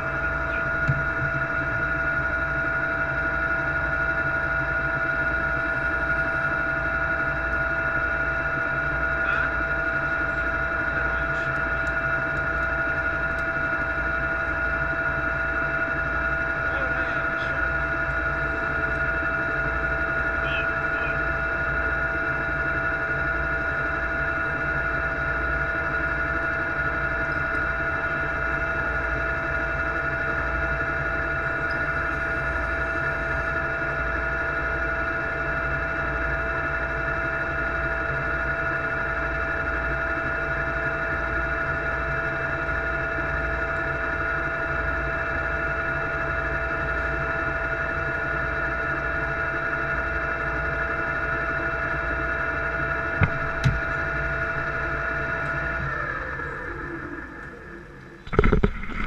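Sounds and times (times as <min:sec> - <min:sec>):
machine whining and rumbling: 0:00.0 - 0:59.0.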